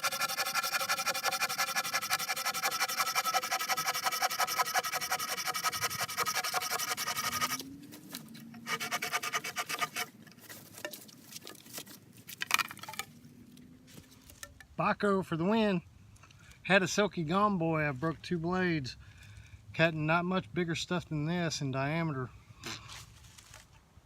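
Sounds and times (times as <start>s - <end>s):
hand saw cutting wood: 0.0s - 10.8s.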